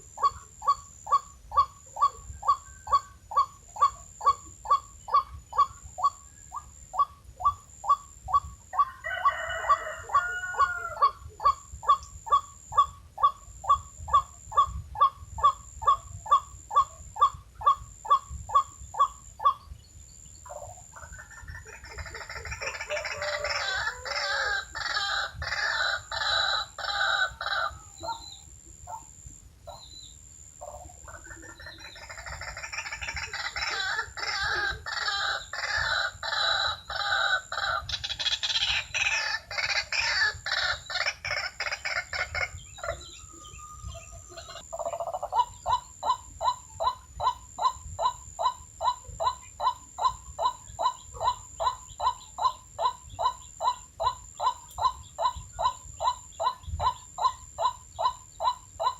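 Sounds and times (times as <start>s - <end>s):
waterhens calling: 20.5s - 29.0s, 30.6s - 58.9s.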